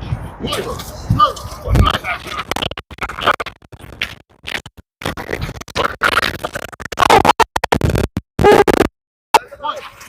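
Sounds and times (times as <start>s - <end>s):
music with scratching: 1.6s - 8.9s.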